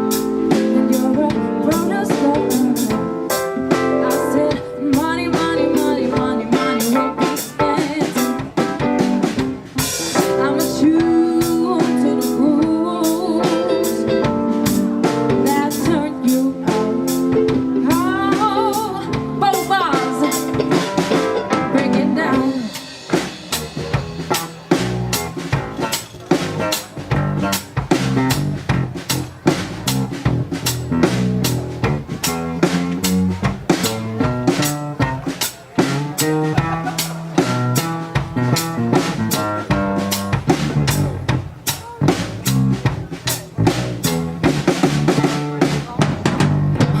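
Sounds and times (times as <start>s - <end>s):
drum kit with rimshots: 0.0s - 47.0s
live pop-rock band: 0.0s - 47.0s
person singing: 0.5s - 8.7s, 10.2s - 23.0s.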